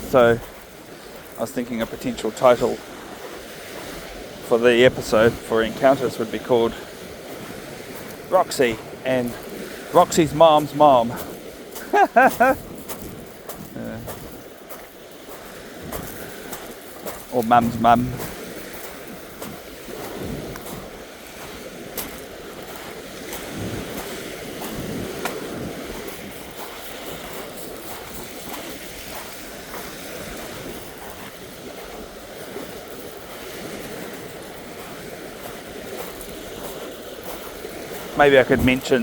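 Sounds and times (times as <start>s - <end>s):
surf washing onto rocky shore: 0.0s - 39.0s
wind on microphone: 0.0s - 39.0s.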